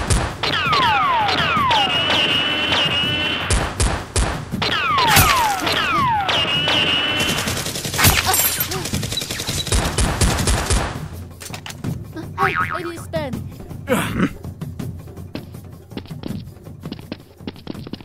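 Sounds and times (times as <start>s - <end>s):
gunshots: 0.0s - 11.0s.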